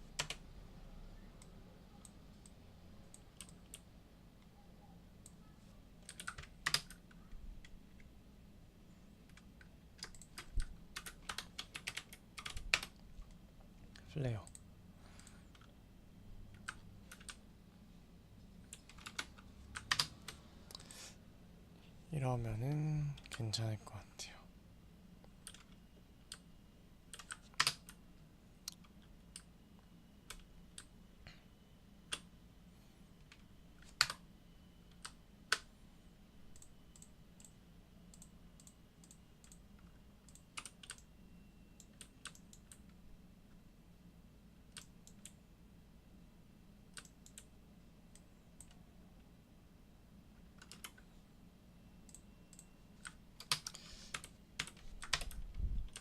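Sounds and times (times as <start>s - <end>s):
faint low hum: 0.0s - 56.0s
computer keyboard keystrokes: 0.2s - 0.4s, 6.0s - 8.1s, 9.3s - 13.0s, 16.5s - 17.4s, 18.7s - 20.8s, 25.3s - 26.5s, 27.1s - 28.0s, 33.2s - 34.2s, 36.5s - 41.1s, 41.8s - 43.0s, 44.7s - 45.4s, 46.9s - 47.5s, 50.5s - 51.0s, 52.1s - 56.0s.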